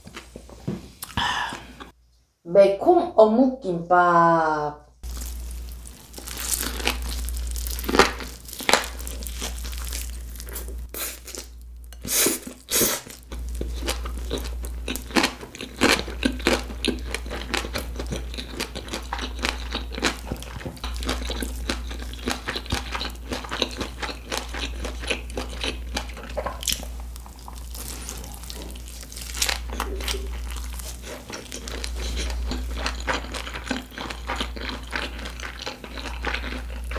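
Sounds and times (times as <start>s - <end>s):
biting and chewing with crunches: 5.0s - 11.5s, 12.5s - 36.9s.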